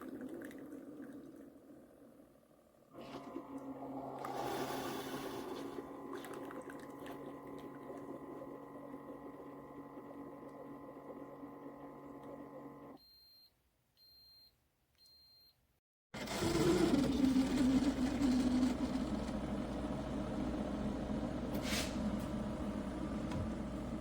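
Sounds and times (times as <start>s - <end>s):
coffee maker motor hum: 2.0s - 13.0s, 16.2s - 24.0s.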